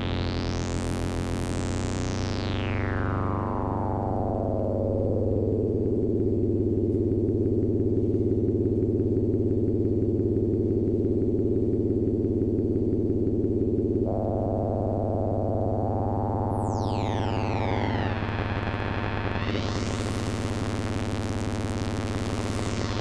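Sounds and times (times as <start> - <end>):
buzzy synthesizer drone: 0.0 - 7.7, 12.6 - 23.0
high pitched falling sweep: 14.1 - 23.0.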